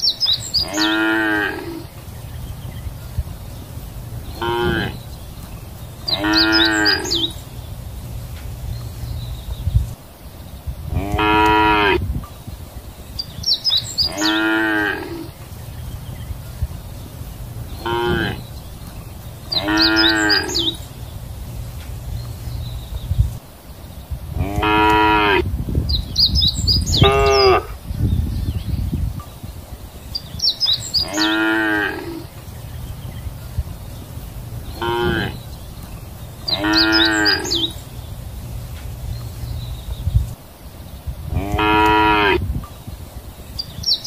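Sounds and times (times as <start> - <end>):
cows mooing: 0.6 - 1.9, 4.4 - 5.0, 6.1 - 7.3, 10.9 - 12.0, 14.0 - 15.3, 17.8 - 18.4, 19.5 - 20.8, 24.3 - 25.5, 26.9 - 27.8, 31.0 - 32.3, 34.8 - 35.4, 36.5 - 37.8, 41.3 - 42.5
steady low rumble: 1.8 - 14.0, 15.2 - 24.7, 32.2 - 43.8.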